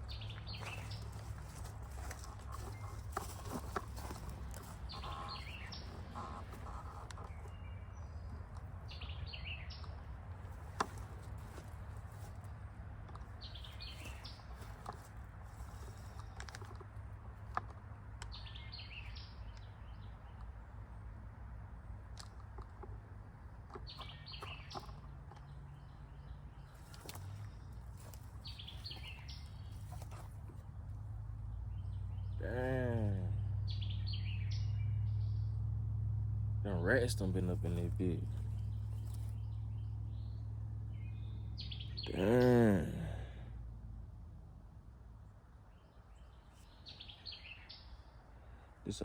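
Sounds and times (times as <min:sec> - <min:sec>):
bird singing falling chirps: 0:00.0 - 0:10.0, 0:28.4 - 0:30.2, 0:37.0 - 0:43.0
songbird chirping: 0:00.0 - 0:43.4, 0:45.2 - 0:49.0.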